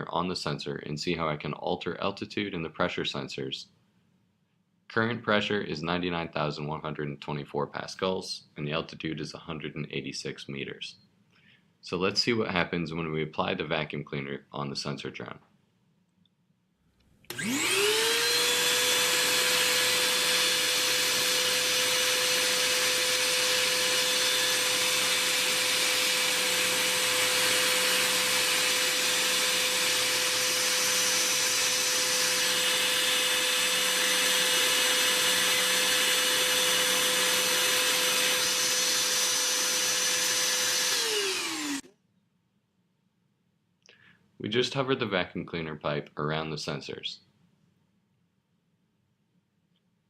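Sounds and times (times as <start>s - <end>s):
vacuum cleaner motor whining: 17.3s - 41.9s.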